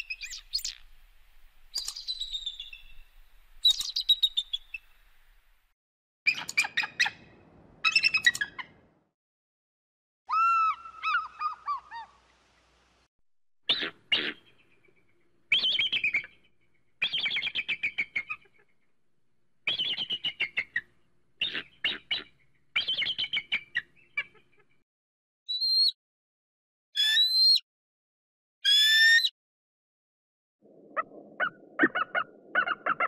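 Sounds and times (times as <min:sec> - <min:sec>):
eagle calling: 0:10.3 - 0:12.3, 0:31.0 - 0:33.0.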